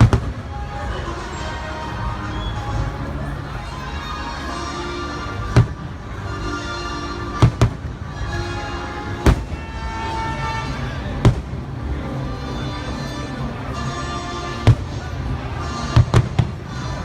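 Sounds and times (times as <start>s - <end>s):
fireworks bangs: 0.0s - 0.6s, 5.5s - 6.1s, 7.4s - 8.3s, 9.2s - 11.9s, 14.6s - 16.8s
show music: 0.0s - 17.0s.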